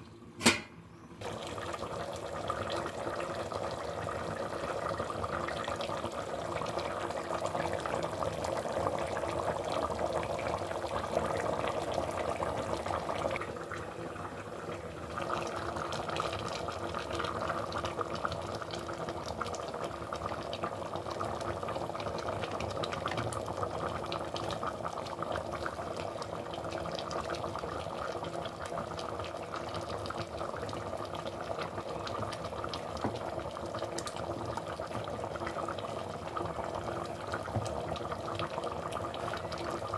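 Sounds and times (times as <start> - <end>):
tap water running: 29.6 - 39.9.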